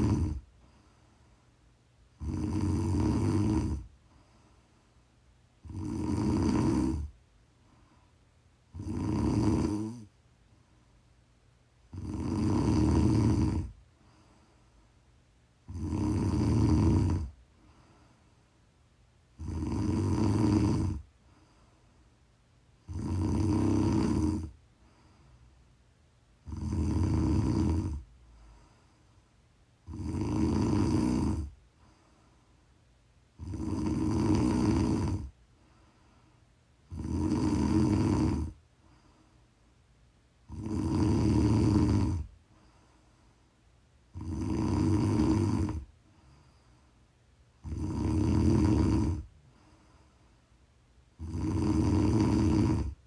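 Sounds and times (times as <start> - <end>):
person snoring: 0.0 - 0.5, 2.2 - 3.9, 5.6 - 7.1, 8.7 - 10.1, 11.9 - 13.8, 15.7 - 17.4, 19.4 - 21.1, 22.8 - 24.6, 26.4 - 28.1, 29.8 - 31.6, 33.4 - 35.4, 36.9 - 38.6, 40.5 - 42.3, 44.1 - 45.9, 47.6 - 49.3, 51.2 - 53.0.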